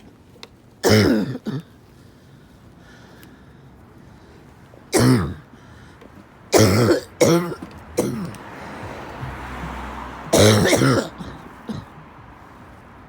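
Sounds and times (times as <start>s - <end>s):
person coughing: 0.8s - 1.7s, 4.9s - 5.5s, 6.5s - 8.4s, 10.3s - 12.0s.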